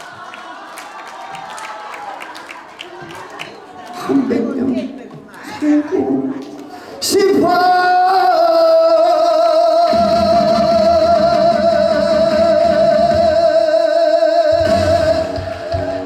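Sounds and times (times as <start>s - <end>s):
backing band accompaniment: 9.9s - 13.8s, 14.5s - 16.0s.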